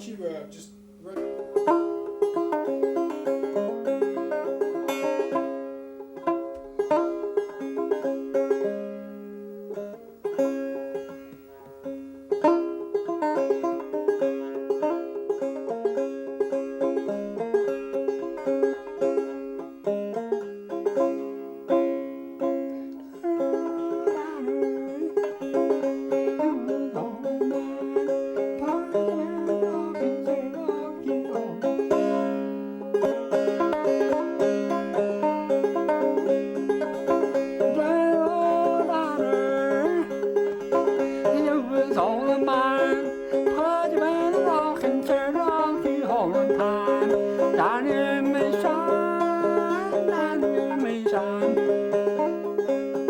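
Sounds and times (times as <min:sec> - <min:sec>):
banjo playing: 0:00.0 - 0:53.0.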